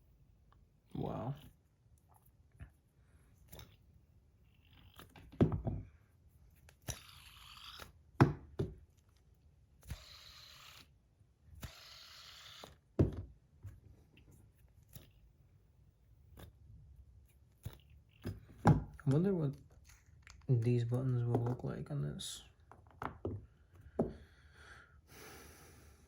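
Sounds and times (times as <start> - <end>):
fidget spinner whirring: 6.8 - 8.0, 9.8 - 12.9
fidget spinner clicks: 11.6 - 12.8.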